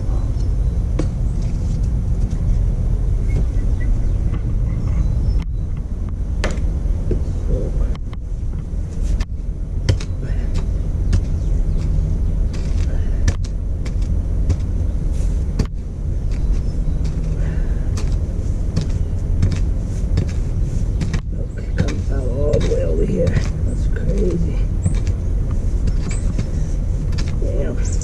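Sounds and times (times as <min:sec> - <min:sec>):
engine running under load: 0:00.0 - 0:28.0
cutter wheel grinding stump: 0:09.9 - 0:28.0.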